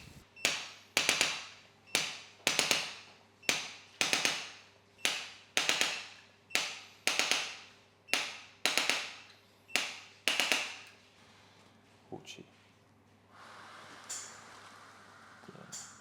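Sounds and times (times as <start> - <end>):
sharp percussive clicks: 3.5 - 6.0, 8.1 - 9.2, 9.8 - 10.9.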